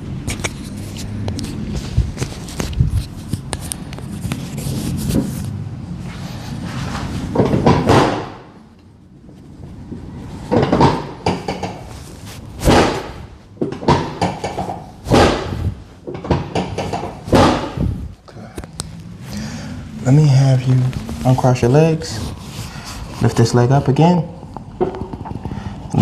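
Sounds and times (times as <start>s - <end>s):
adjusting table thumps: 10.5s - 11.9s, 12.6s - 17.9s.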